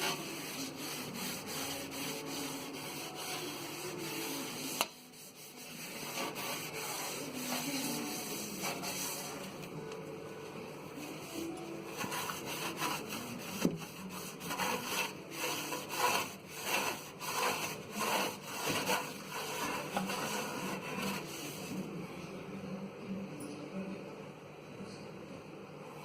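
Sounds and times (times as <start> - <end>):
hand scrubbing microwave surface: 0.0 - 9.6, 11.2 - 21.8.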